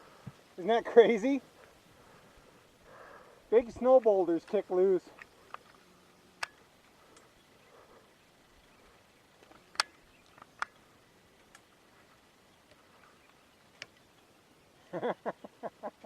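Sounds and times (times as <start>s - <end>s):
sharp clicks: 6.4s - 7.3s, 9.4s - 10.8s.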